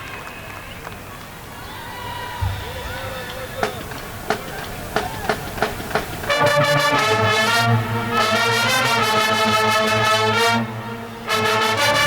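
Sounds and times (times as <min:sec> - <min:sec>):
brass band chords: 0:05.3 - 0:12.0.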